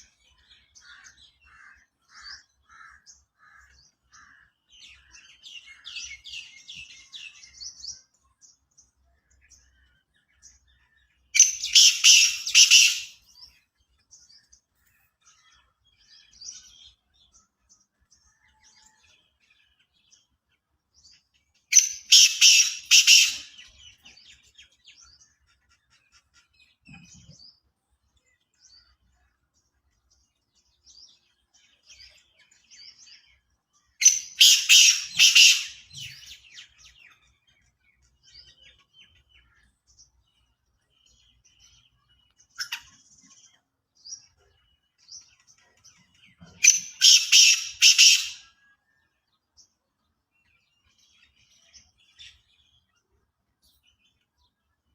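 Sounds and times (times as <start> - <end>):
small birds chirping: 0.0 - 54.9.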